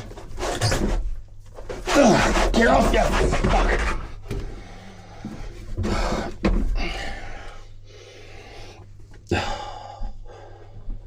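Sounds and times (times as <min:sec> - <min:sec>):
man breathing hard: 0:04.3 - 0:11.0.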